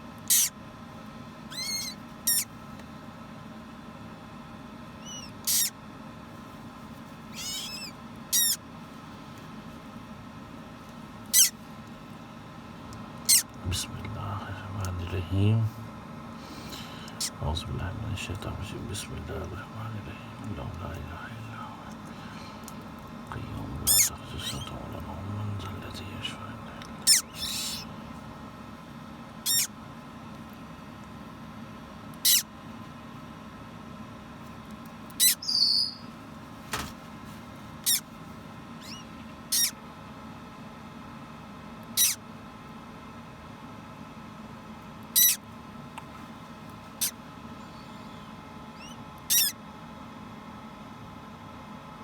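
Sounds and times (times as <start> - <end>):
parrot chick squeaks: 0.3 - 0.5, 1.5 - 2.5, 5.0 - 5.7, 7.3 - 8.6, 11.3 - 11.6, 13.2 - 13.6, 17.1 - 17.4, 23.9 - 24.7, 27.0 - 27.9, 29.4 - 29.7, 32.2 - 32.5, 35.2 - 36.1, 37.8 - 38.1, 38.8 - 39.8, 41.9 - 42.2, 45.1 - 45.4, 48.8 - 49.6.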